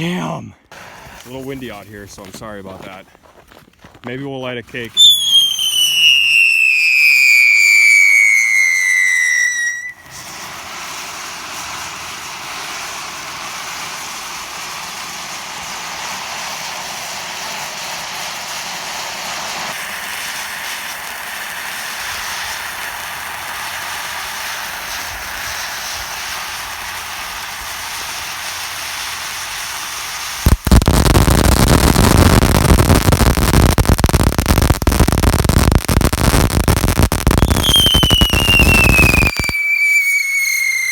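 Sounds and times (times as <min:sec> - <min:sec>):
firework crackling: 0:00.6 - 0:03.0, 0:04.7 - 0:40.9
firework whistle gliding down: 0:05.0 - 0:12.9, 0:30.4 - 0:40.9.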